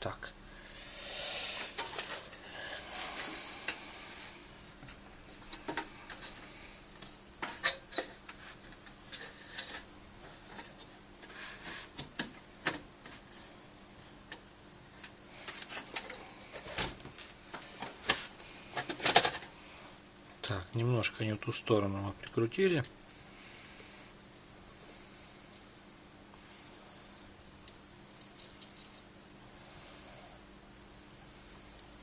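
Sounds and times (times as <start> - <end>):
hard drive clicks and scrapes: 1.6 - 20.4.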